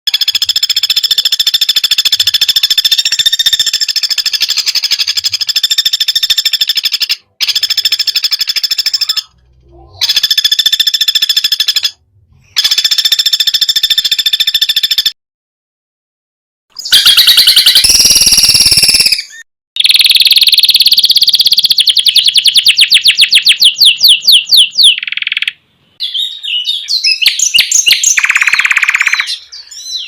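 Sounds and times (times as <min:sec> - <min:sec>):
songbird rapid trill: 0:00.1 - 0:09.4, 0:16.8 - 0:30.0.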